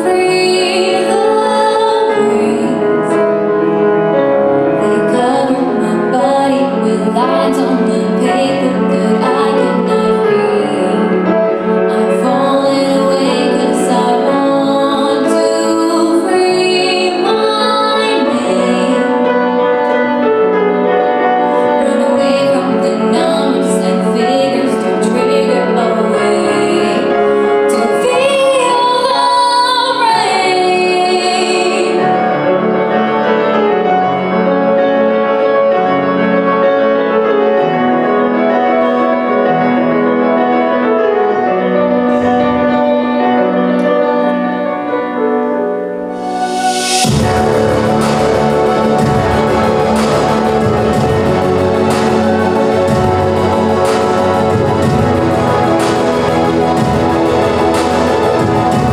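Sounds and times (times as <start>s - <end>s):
woman singing pop song: 0.0s - 3.2s, 4.8s - 20.0s, 21.5s - 32.2s
piano accompaniment: 0.0s - 58.9s.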